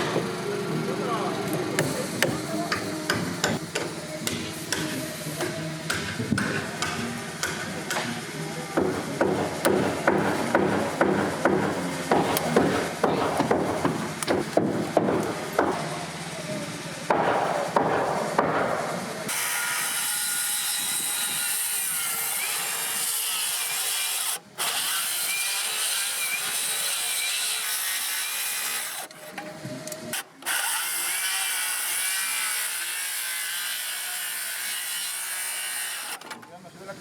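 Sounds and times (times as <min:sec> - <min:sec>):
chainsaw cutting a log: 0:19.3 - 0:29.2, 0:30.1 - 0:36.3.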